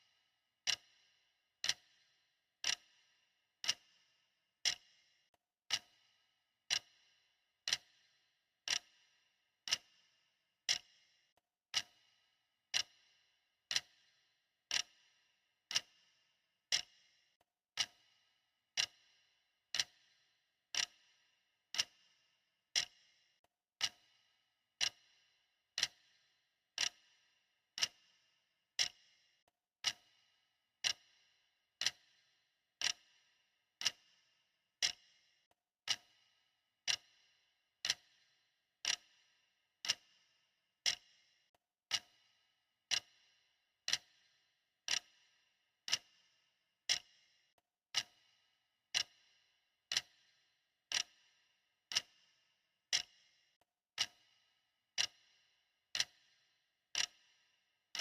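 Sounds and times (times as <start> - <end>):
clock ticking: 0.6 - 0.9, 1.6 - 2.0, 2.6 - 2.9, 3.6 - 3.9, 4.6 - 4.9, 5.7 - 6.0, 6.7 - 7.0, 7.7 - 7.9, 8.7 - 8.9, 9.7 - 9.9, 10.7 - 10.9, 11.7 - 12.0, 12.7 - 13.0, 13.7 - 14.0, 14.7 - 15.0, 15.7 - 15.9, 16.7 - 16.9, 18.8 - 19.0, 19.8 - 20.0, 20.7 - 21.0, 21.8 - 22.0, 22.8 - 23.0, 23.8 - 24.1, 24.8 - 25.0, 25.8 - 26.0, 26.8 - 27.0, 27.8 - 28.0, 28.8 - 29.0, 29.8 - 30.2, 30.8 - 31.1, 31.8 - 32.1, 32.8 - 33.1, 33.8 - 34.1, 34.8 - 35.0, 35.8 - 36.1, 36.8 - 37.2, 37.8 - 38.2, 38.8 - 39.1, 40.8 - 41.0, 41.9 - 42.2, 42.9 - 43.2, 43.9 - 44.2, 44.9 - 45.1, 45.9 - 46.2, 46.9 - 47.1, 48.9 - 49.2, 49.9 - 50.2, 50.9 - 51.2, 51.9 - 52.1, 52.9 - 53.1, 54.0 - 54.3, 55.0 - 55.2, 56.0 - 56.2, 57.0 - 57.2.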